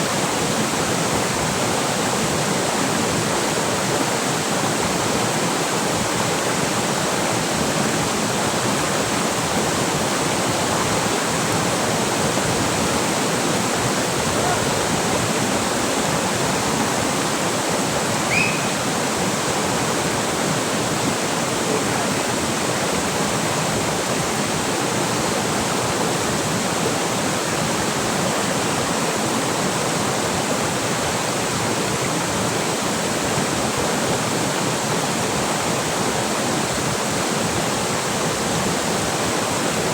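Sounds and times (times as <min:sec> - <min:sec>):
river water rushing: 0:00.0 - 0:39.9
brief high chirp: 0:18.3 - 0:18.8.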